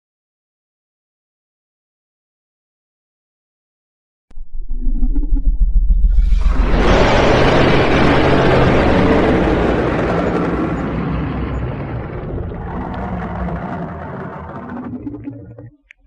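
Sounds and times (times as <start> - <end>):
deep low rumble: 4.3 - 16.0.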